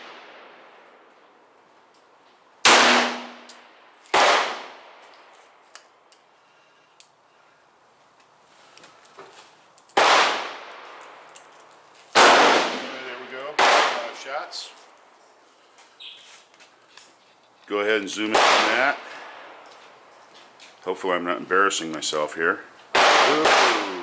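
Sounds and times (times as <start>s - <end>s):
revolver shots echoing: 2.7s - 3.5s, 23.0s - 24.0s.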